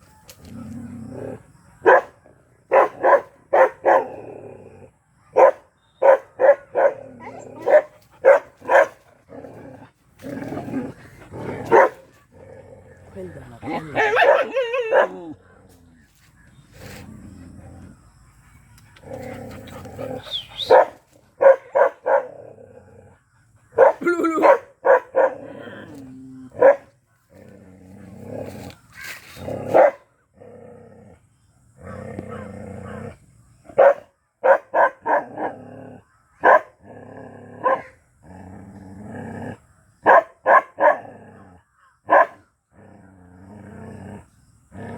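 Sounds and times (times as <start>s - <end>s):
dog barking aggressively: 1.8s - 4.2s, 5.3s - 9.0s, 11.4s - 12.1s, 13.8s - 15.2s, 20.0s - 22.4s, 23.7s - 25.5s, 26.6s - 26.9s, 29.6s - 30.0s, 33.7s - 35.5s, 40.0s - 41.1s, 42.1s - 42.4s
dog growling: 6.9s - 15.8s, 19.0s - 20.8s, 21.4s - 24.6s, 25.2s - 28.8s, 29.4s - 33.3s, 36.8s - 39.6s, 42.7s - 44.9s.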